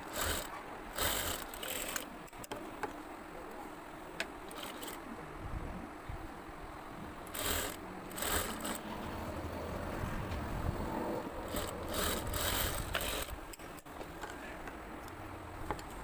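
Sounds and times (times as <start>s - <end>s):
sewing machine stitching: 0.0s - 2.1s, 7.3s - 8.9s, 11.4s - 13.4s
low motor hum: 6.9s - 13.4s.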